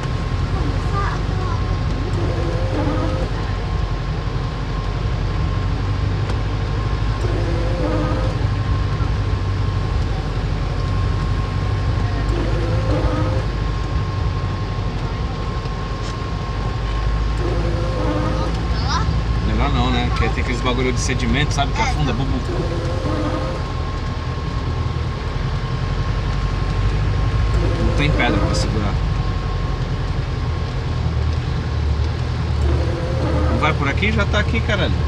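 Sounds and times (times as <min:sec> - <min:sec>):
vehicle engine running: 0:00.0 - 0:35.0.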